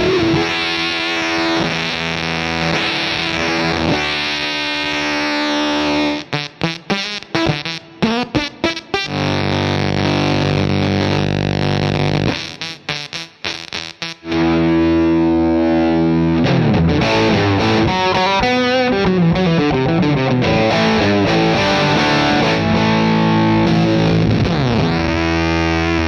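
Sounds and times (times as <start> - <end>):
distorted electric guitar: 0.0 - 26.0.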